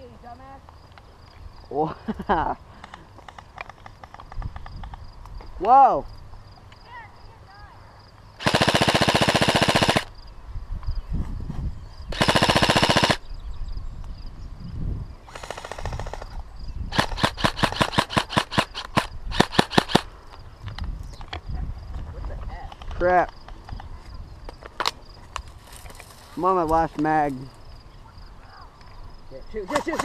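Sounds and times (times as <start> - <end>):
airsoft rifle firing: 8.4 - 10.1, 12.1 - 13.2, 16.9 - 20.1.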